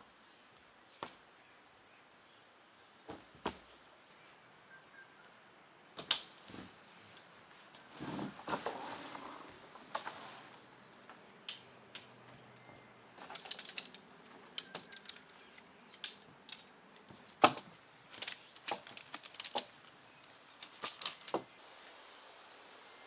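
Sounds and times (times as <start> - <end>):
small objects clicking and knocking: 13.2 - 21.6.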